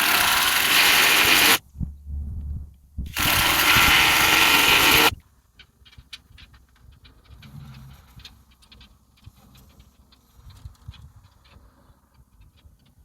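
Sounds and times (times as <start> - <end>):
power tool running: 0.0 - 1.6, 3.1 - 5.2
low hum: 0.1 - 5.1.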